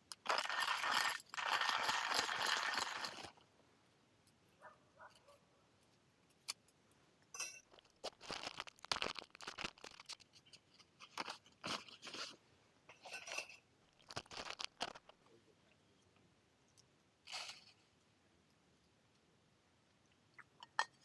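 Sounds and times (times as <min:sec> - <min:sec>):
crunches and scrapes: 0:07.6 - 0:15.3.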